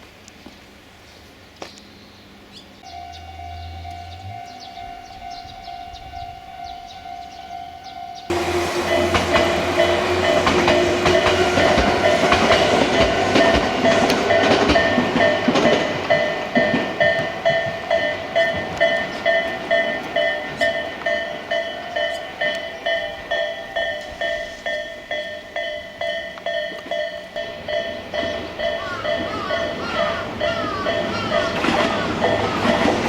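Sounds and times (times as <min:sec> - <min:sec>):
level-crossing warning bell: 0:02.8 - 0:33.0
train wheels clacking over rail joints: 0:08.3 - 0:33.0.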